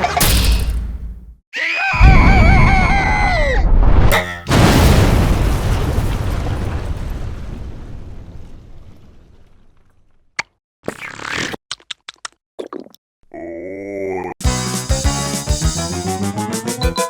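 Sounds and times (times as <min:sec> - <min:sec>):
explosion-like blast: 0:03.7 - 0:09.8.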